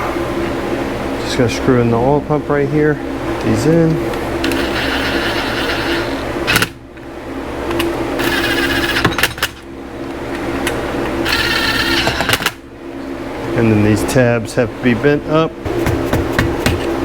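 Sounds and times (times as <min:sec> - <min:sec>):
electric screwdriver running: 0:04.4 - 0:06.7, 0:11.3 - 0:12.6.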